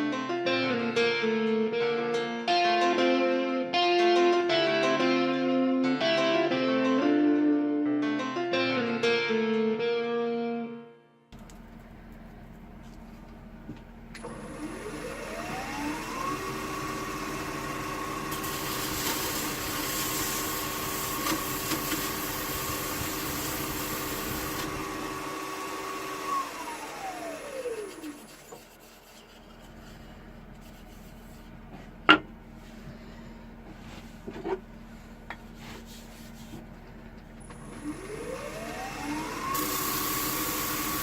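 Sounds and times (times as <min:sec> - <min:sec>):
power tool motor whine: 0:14.2 - 0:28.5, 0:37.4 - 0:41.0
sanding arbor hissing on wood: 0:18.3 - 0:25.0, 0:39.0 - 0:41.0.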